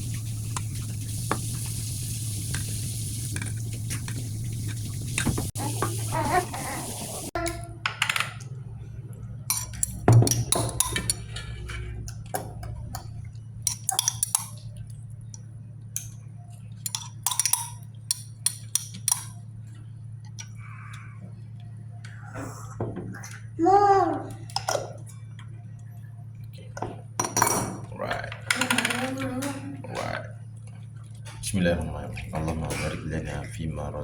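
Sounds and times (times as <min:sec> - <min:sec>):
steady low hum: 0:00.0 - 0:34.0
utensils clinking on plates: 0:09.4 - 0:12.4, 0:13.0 - 0:14.7, 0:16.8 - 0:19.4, 0:27.2 - 0:29.7.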